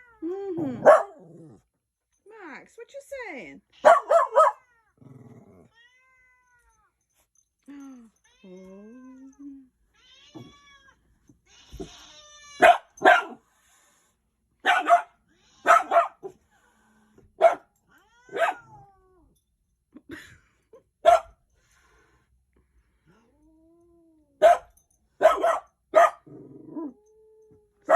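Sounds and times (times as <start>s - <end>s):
dog barking: 0.8s - 1.3s, 3.8s - 4.6s, 12.6s - 13.4s, 14.6s - 16.4s, 17.4s - 17.7s, 18.3s - 18.8s, 21.0s - 21.4s, 24.4s - 26.3s
cat meowing: 5.7s - 6.9s, 9.9s - 12.9s.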